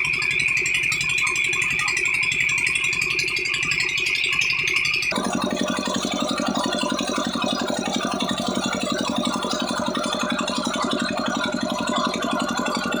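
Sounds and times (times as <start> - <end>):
stationary diesel engine running: 5.1 - 13.0.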